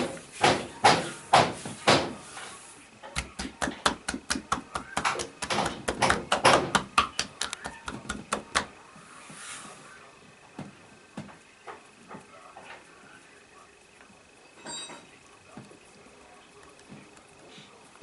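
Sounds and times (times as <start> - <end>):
rapid sharp taps: 3.1 - 8.8.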